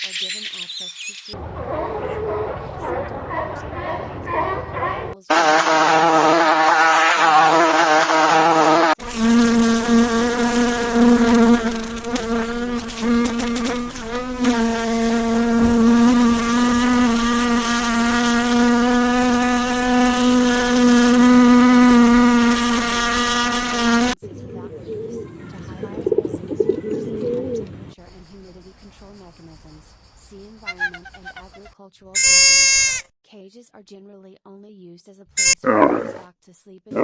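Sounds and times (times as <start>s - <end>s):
insect wings buzzing: 5.3s - 24.2s, 28.2s - 33.0s, 35.4s - 35.8s.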